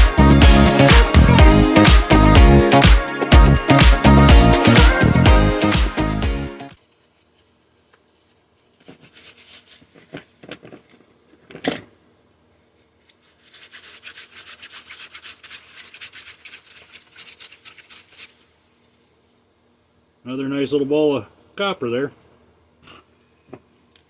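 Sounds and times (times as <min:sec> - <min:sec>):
hand scraping and rubbing coil: 0:06.8 - 0:11.4, 0:12.2 - 0:19.5.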